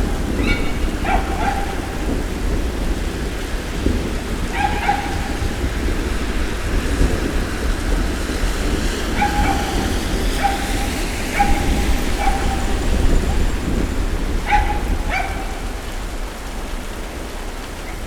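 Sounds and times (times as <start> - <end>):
dog barking: 0.0 - 2.2, 4.4 - 5.8, 9.0 - 13.4, 14.4 - 15.9
rain hiss: 0.0 - 18.0.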